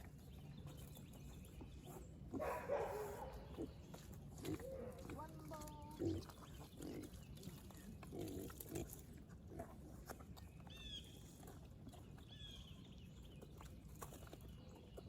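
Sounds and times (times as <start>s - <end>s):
pigs grunting: 2.3s - 10.4s.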